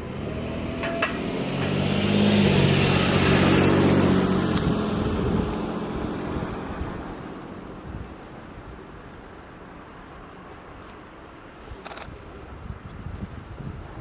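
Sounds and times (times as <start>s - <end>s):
vehicle engine driving past: 0.0s - 8.1s.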